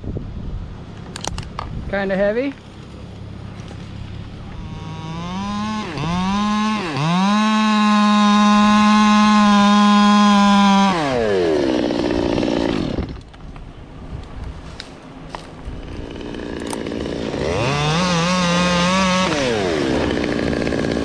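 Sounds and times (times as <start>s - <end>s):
chainsaw revving: 4.5s - 13.3s, 15.8s - 21.0s.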